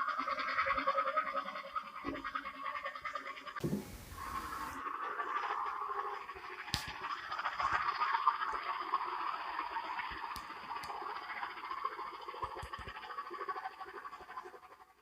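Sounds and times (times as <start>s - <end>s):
slowed elephant rumble: 3.6s - 4.8s.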